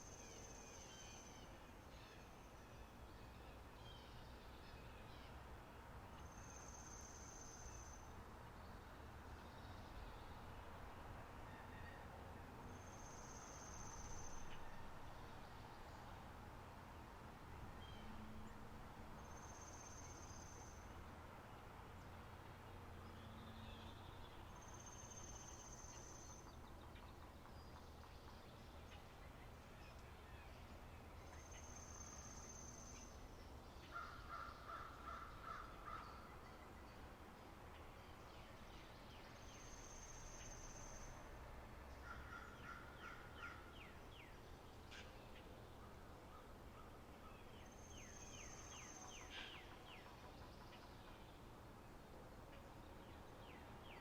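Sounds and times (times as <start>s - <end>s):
insects: 6.2s - 8.1s, 12.7s - 14.6s, 19.2s - 20.8s, 24.5s - 26.4s, 31.4s - 33.1s.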